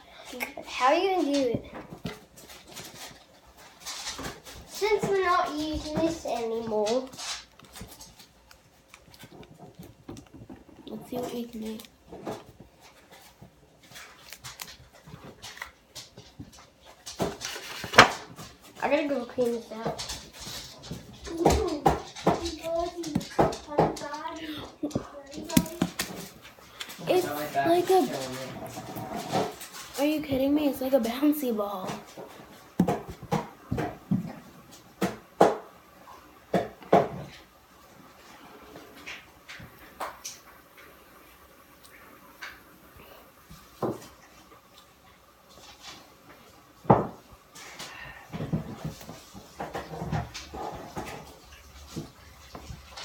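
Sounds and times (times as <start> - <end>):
slime thudding on hard surface: 25.5 - 26.3.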